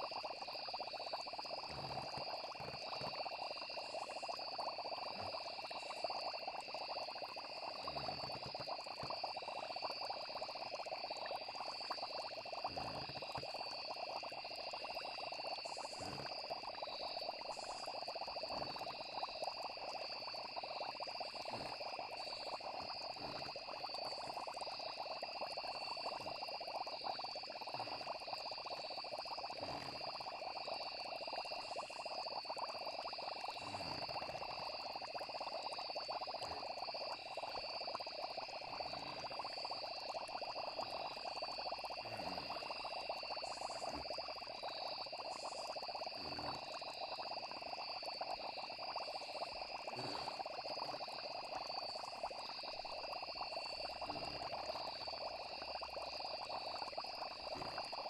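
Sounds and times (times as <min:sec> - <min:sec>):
frogs croaking: 0:00.0 - 0:58.0
insects trilling: 0:00.0 - 0:58.0.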